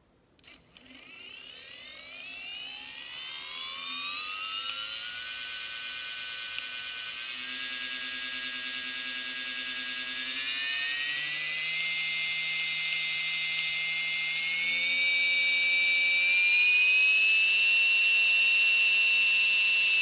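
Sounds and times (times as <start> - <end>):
electric motor whine: 0.8 - 20.0
sharp clicks: 6.5 - 6.7.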